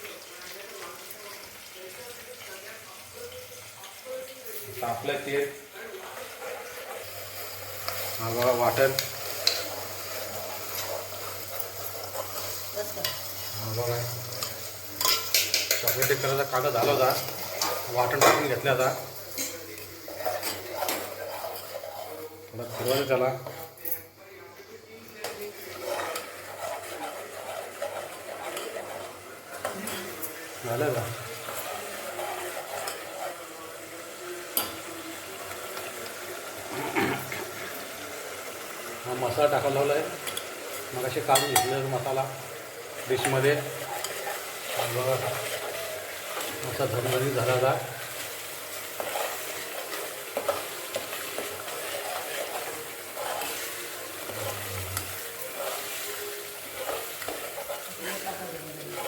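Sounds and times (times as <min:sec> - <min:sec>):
paste sizzling in oil: 0:00.0 - 0:59.0
spoon clinking against pan: 0:14.4 - 0:16.2, 0:41.3 - 0:41.7.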